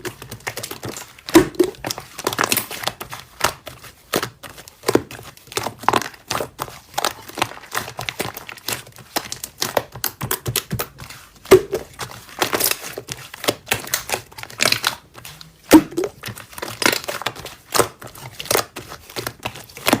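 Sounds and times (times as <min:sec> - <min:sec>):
slime squished by hand: 0:00.0 - 0:20.0.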